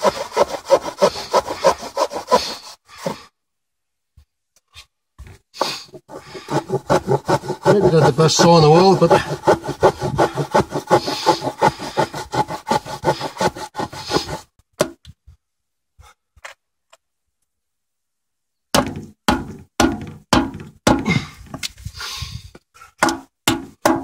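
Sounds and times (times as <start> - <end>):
knife saw sawing: 0.0 - 3.3, 6.0 - 14.5.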